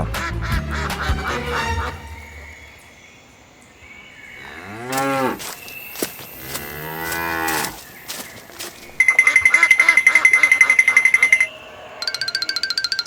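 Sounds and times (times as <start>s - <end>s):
cow mooing: 4.4s - 5.4s, 6.5s - 7.8s.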